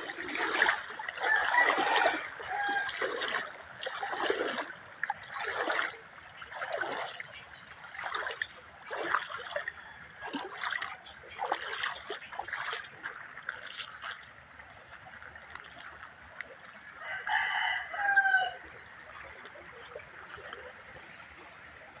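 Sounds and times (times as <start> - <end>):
creek water splashing: 0.0 - 22.0
rooster crowing: 1.2 - 3.0, 17.0 - 18.7.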